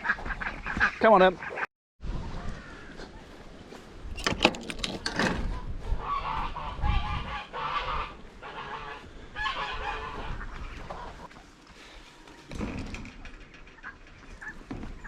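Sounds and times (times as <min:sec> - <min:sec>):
geese honking: 0:06.0 - 0:11.3.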